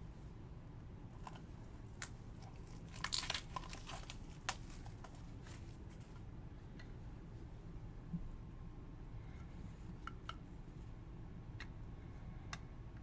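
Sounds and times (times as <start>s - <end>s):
plastic wrapping crinkling: 2.0s - 5.8s.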